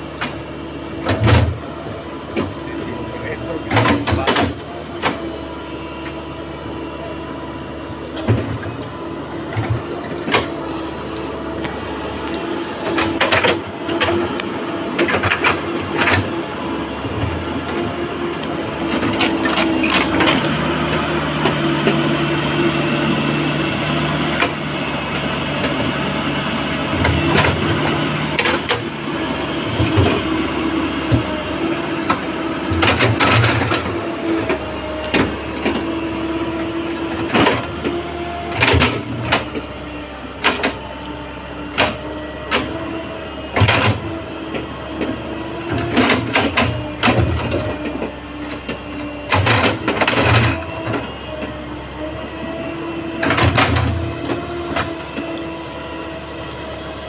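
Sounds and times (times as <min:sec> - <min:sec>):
diesel engine under load: 0:00.0 - 0:57.0
sharp metallic clanks: 0:18.8 - 0:20.6.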